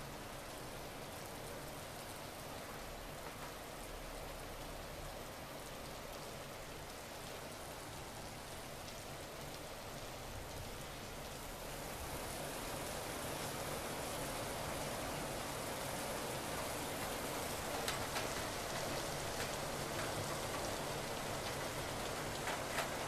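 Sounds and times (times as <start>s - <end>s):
thunderstorm rain falling: 9.5s - 23.0s.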